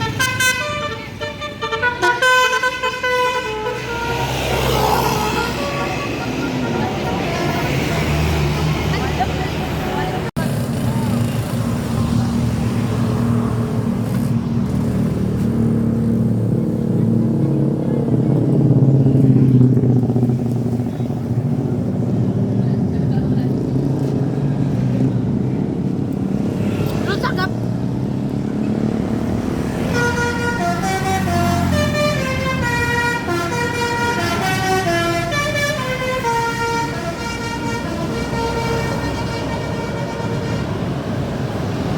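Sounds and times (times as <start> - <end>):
bus horn playing a melody: 0.0 - 7.8, 29.8 - 41.0
bus engine humming: 0.0 - 41.9.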